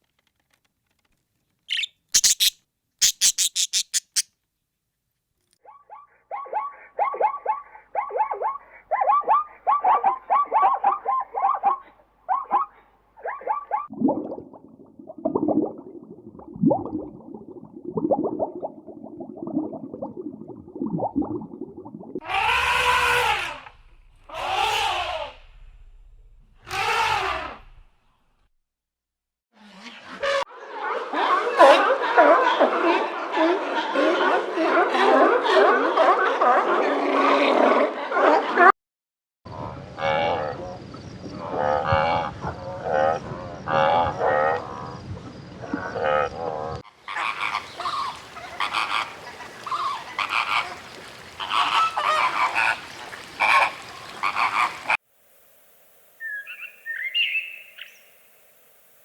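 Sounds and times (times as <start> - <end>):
farm animals calling: 1.7 - 4.2, 47.1 - 55.0
livestock calling: 1.7 - 4.2.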